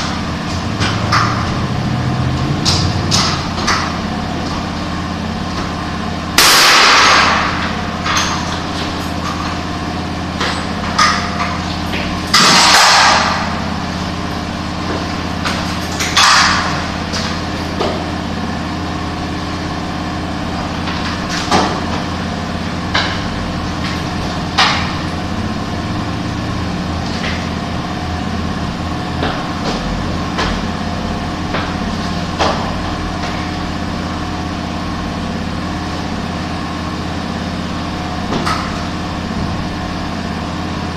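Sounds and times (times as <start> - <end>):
steady engine hum: 0.0 - 40.9.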